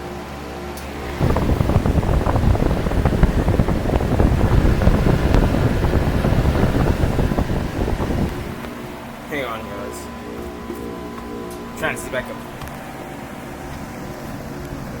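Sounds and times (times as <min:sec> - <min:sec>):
heat pump humming: 0:00.0 - 0:15.0
wind buffeting microphone: 0:01.0 - 0:08.9.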